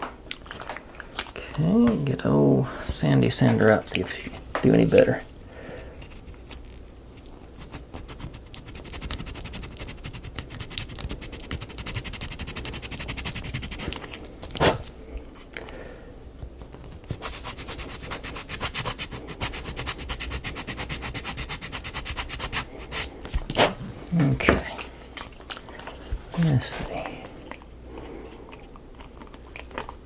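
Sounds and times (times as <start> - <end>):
hand sanding wood: 7.6 - 14.0, 17.0 - 23.2.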